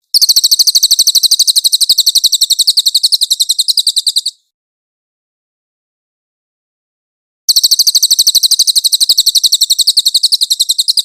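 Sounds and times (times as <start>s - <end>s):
songbird trilling: 0.1s - 4.4s, 7.5s - 11.0s.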